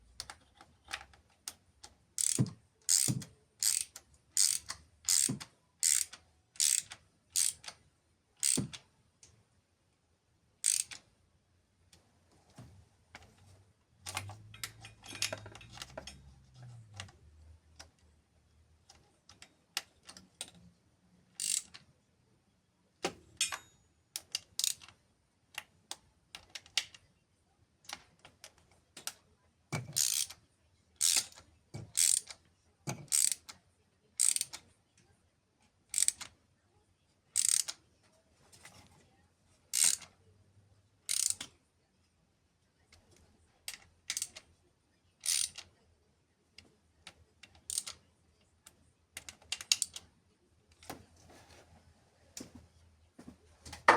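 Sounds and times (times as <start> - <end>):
ratchet wrench clicking: 2.2 - 7.8, 8.4 - 8.8, 10.6 - 11.0, 21.4 - 21.8, 24.6 - 24.9, 29.9 - 30.4, 31.0 - 32.4, 33.0 - 33.5, 34.2 - 34.6, 35.9 - 36.3, 37.4 - 37.8, 39.7 - 40.1, 41.1 - 41.5, 43.7 - 44.4, 45.2 - 45.6, 47.7 - 48.0, 49.5 - 50.0.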